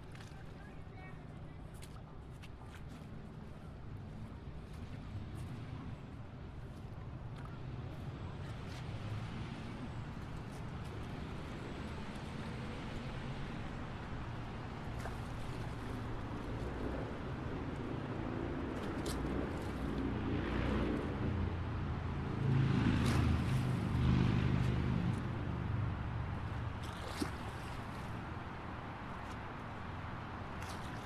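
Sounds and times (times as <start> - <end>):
traffic rumble: 0.0 - 31.0
vehicle passing close: 17.4 - 28.2.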